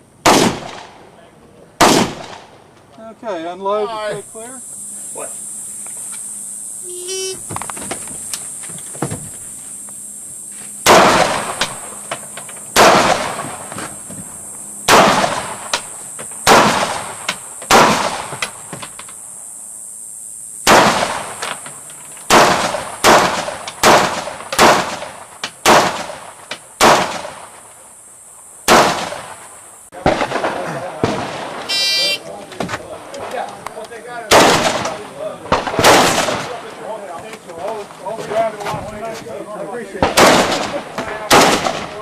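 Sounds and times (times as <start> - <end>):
rifle shots with echo: 0.2 - 1.0, 1.8 - 2.6, 10.8 - 12.0, 12.7 - 13.7, 14.8 - 18.6, 20.6 - 21.5, 22.3 - 27.6, 28.7 - 29.4, 34.3 - 36.7, 40.0 - 42.0.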